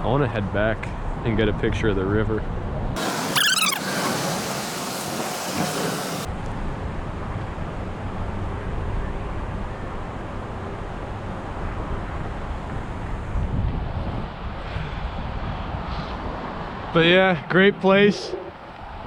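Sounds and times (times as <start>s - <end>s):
bright hiss: 3.0s - 6.3s
wind buffeting microphone: 12.0s - 17.0s.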